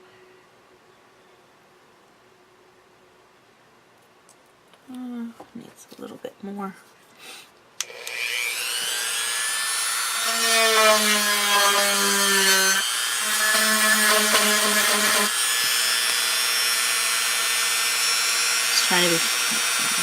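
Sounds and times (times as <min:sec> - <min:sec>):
power drill boring wood: 0:07.8 - 0:20.0.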